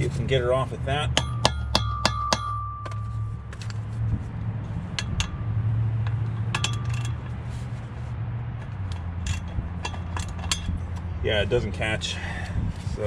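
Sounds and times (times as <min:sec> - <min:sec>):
metallic clinks and taps: 0:01.1 - 0:03.9, 0:04.9 - 0:07.4, 0:08.6 - 0:11.1.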